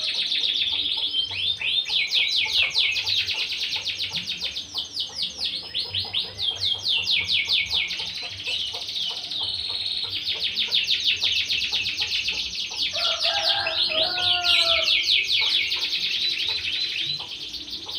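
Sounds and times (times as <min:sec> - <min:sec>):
canary singing trills: 0:00.0 - 0:17.9
lower-pitched bird notes: 0:00.0 - 0:17.9.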